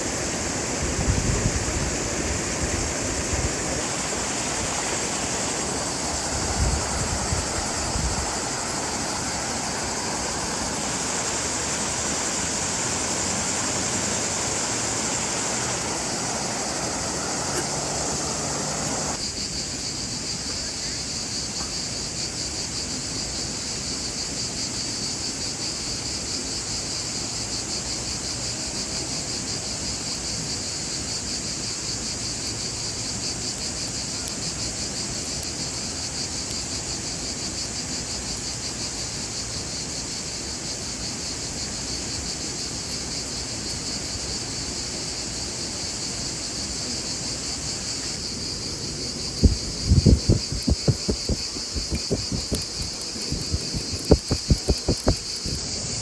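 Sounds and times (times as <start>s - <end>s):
rushing water noise: 0.0s - 19.5s, 32.4s - 56.0s
crickets chirping: 0.0s - 56.0s
low thumps: 49.4s - 55.6s.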